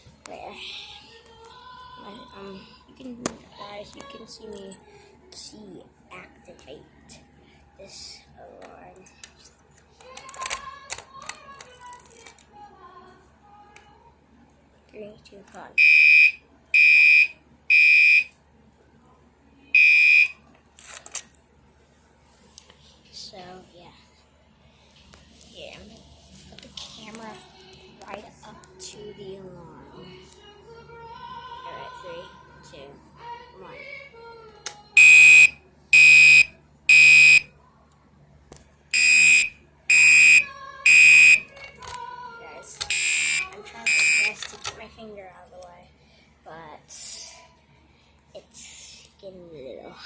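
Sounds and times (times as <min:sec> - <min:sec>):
fire alarm beeps: 0:15.8 - 0:18.3, 0:19.8 - 0:20.4, 0:35.0 - 0:37.5, 0:38.9 - 0:41.5, 0:42.9 - 0:44.4.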